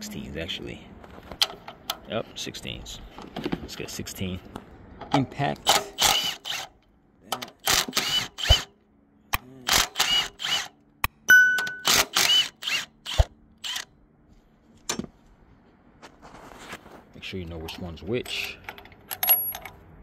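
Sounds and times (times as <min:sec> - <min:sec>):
impact wrench bursts: 0:05.7 - 0:06.7, 0:07.5 - 0:08.7, 0:09.7 - 0:10.7, 0:11.7 - 0:13.9.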